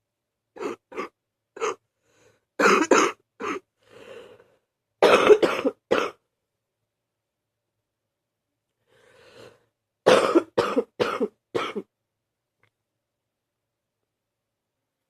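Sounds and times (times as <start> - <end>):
person coughing: 0.6 - 1.8, 2.6 - 3.6, 5.0 - 6.2, 10.1 - 11.9
faint breath: 1.9 - 2.6, 3.7 - 4.7, 8.8 - 9.8.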